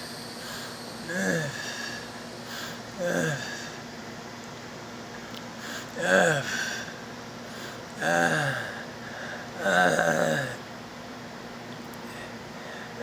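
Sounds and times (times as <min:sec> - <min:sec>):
harsh wheezing breaths: 0:00.4 - 0:03.8.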